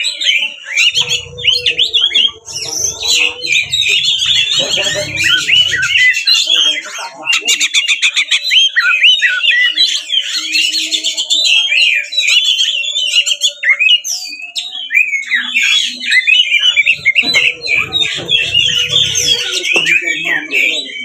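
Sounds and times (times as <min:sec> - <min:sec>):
bird singing loudly: 0:00.0 - 0:21.0.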